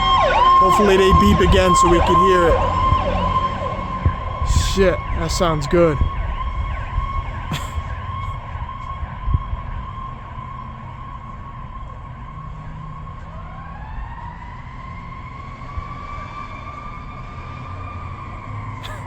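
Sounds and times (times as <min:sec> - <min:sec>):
fire truck siren: 0:00.0 - 0:19.0.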